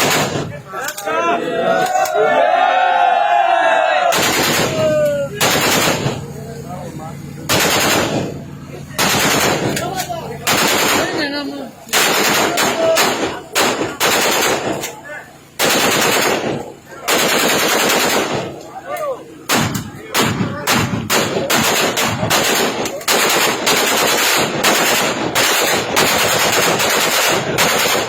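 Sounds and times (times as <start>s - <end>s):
automatic gunfire bursts: 0.0s - 0.6s, 4.1s - 6.4s, 7.4s - 18.6s, 19.5s - 28.0s
single gunshots: 0.0s - 0.6s, 4.1s - 6.4s, 7.5s - 8.4s, 9.0s - 11.3s, 11.9s - 15.0s, 15.6s - 18.6s, 19.5s - 28.0s.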